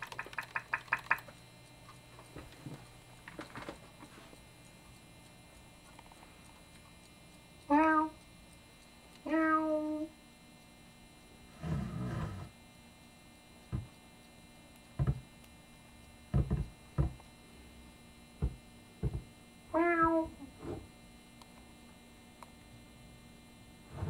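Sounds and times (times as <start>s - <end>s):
cartoon cat meowing: 7.7s - 8.2s, 9.3s - 10.1s, 19.8s - 20.4s
soft thumps and knocks: 15.0s - 15.2s, 16.3s - 17.2s, 18.4s - 19.3s.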